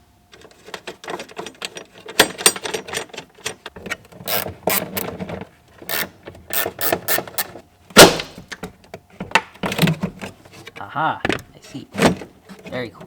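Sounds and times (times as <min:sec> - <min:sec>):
ratchet clicking: 0:04.3 - 0:05.1, 0:05.9 - 0:07.5.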